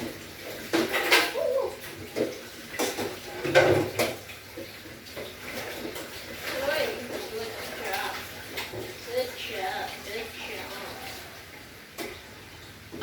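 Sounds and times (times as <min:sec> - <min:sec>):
dishes clattering: 0:00.0 - 0:09.0.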